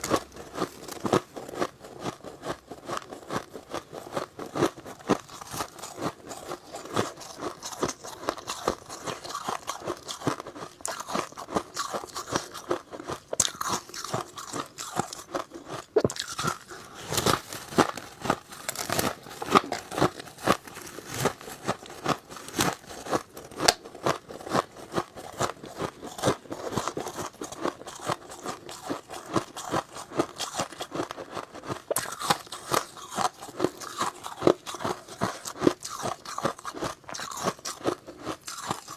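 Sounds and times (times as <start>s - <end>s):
crunching frost: 16.2s - 23.3s.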